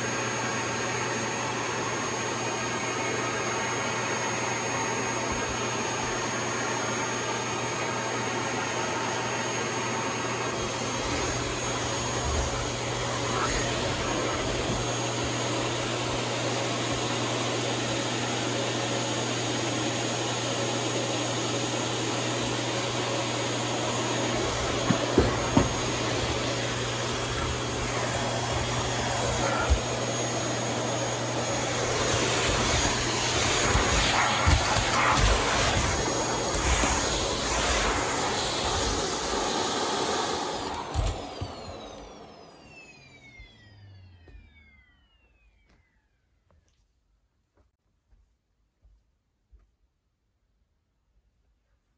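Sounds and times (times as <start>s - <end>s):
vacuum cleaner running: 0.0s - 46.2s.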